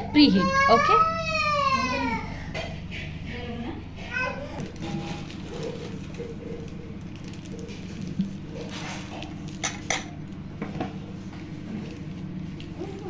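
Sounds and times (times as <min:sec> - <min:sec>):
steady low hum: 0:00.0 - 0:13.0
kitchenware clinking: 0:08.5 - 0:11.0.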